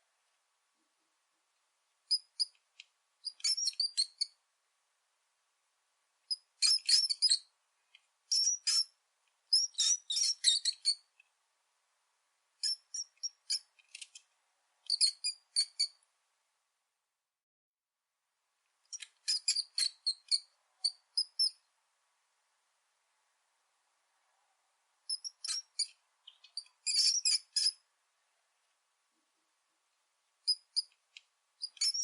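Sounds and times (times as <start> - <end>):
rat squeaking: 2.1 - 2.6, 3.2 - 4.4, 6.3 - 7.5, 8.3 - 11.1, 12.6 - 14.2, 14.8 - 16.0, 18.9 - 21.6, 25.1 - 27.8, 30.4 - 31.0, 31.6 - 32.0.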